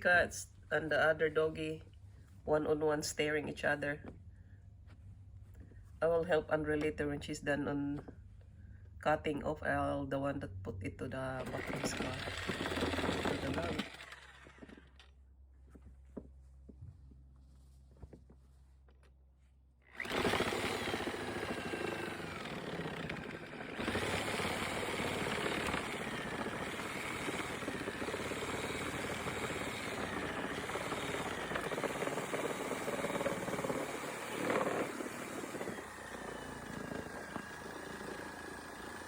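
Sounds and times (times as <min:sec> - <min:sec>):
electric saw cutting wood: 0:11.4 - 0:15.1, 0:19.9 - 0:39.0.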